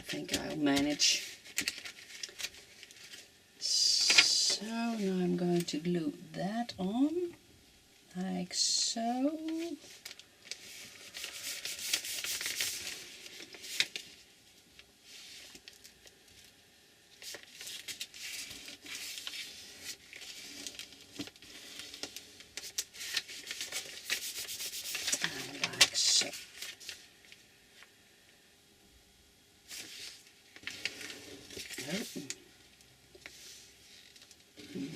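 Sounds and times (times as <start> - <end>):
paper rubbed by hand: 10.6 - 13.9, 17.2 - 27.0.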